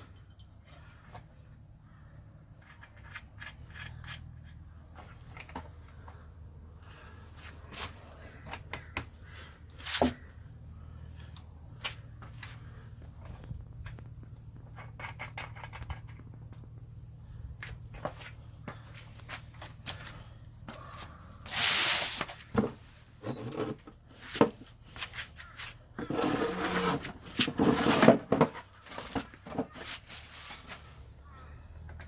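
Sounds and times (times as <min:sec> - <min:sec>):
hand tools clicking and scraping: 0:02.5 - 0:06.2, 0:13.2 - 0:16.8, 0:17.4 - 0:31.0.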